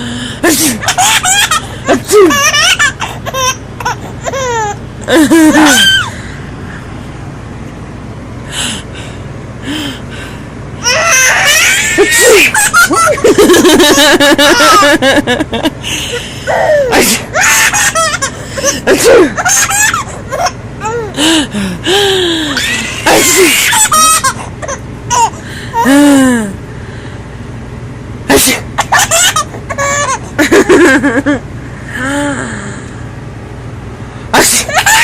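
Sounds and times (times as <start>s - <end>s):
baby laughing: 0.6s - 6.2s, 10.8s - 15.4s, 16.4s - 21.3s, 22.5s - 26.0s, 28.8s - 31.3s, 34.6s - 35.0s.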